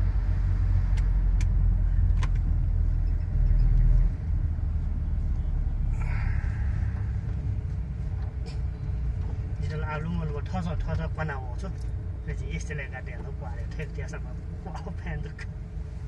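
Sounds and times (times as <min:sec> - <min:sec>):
road vehicle rumble: 0:00.0 - 0:16.0.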